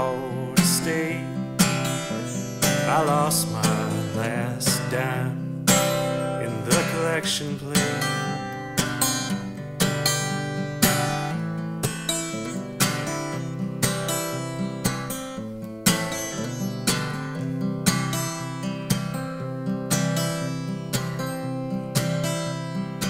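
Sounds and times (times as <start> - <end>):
acoustic guitar strumming chords: 0.0 - 23.0.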